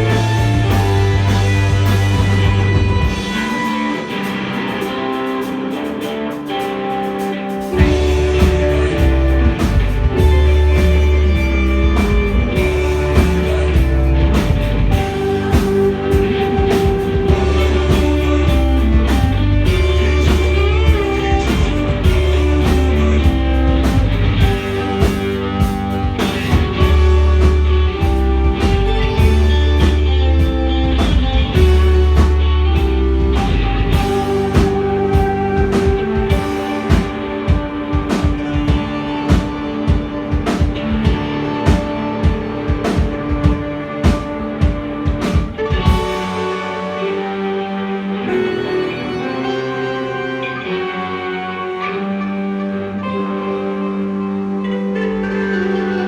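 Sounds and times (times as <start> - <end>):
deep sustained bass notes: 0.0 - 4.7, 7.8 - 45.1
drum kit: 0.0 - 47.6
guitar: 0.0 - 56.0.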